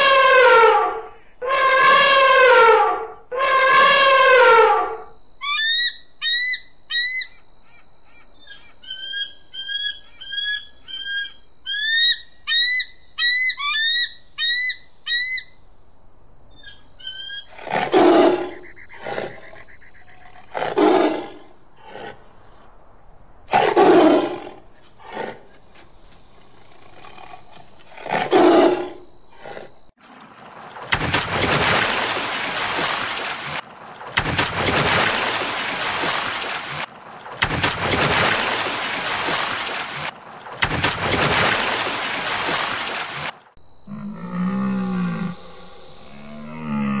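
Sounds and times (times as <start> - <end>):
long descending animal calls: 43.9 - 47.0
rough animal roars: 43.9 - 47.0.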